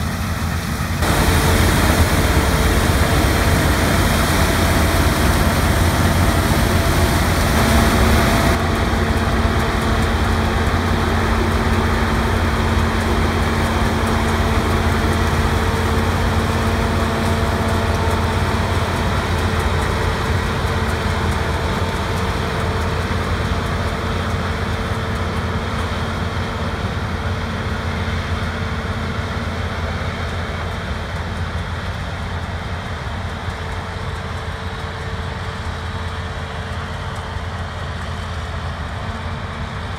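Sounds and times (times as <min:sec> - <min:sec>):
harvest machinery engine drone: 0:00.0 - 0:39.9
high hiss: 0:01.0 - 0:08.6.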